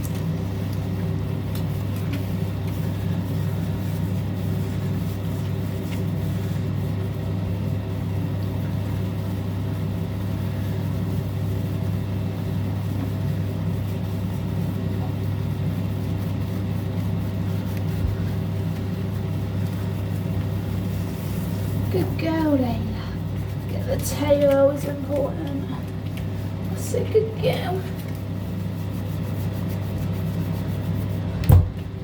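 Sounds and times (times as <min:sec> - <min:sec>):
low mechanical hum: 0:00.0 - 0:32.0.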